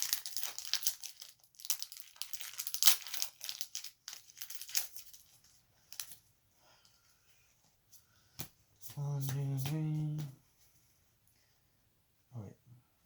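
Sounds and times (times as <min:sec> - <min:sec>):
foil wrapper crinkling and tearing: 0:00.0 - 0:06.2.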